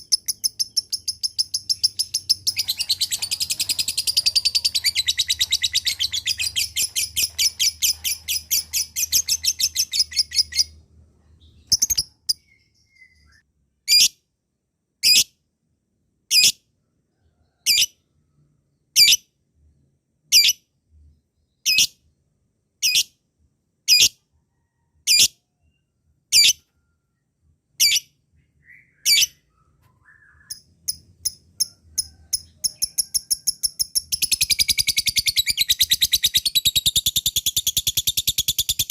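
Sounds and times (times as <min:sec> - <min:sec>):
lovebird chattering trill: 0:00.0 - 0:10.7, 0:11.7 - 0:12.5, 0:30.0 - 0:38.9.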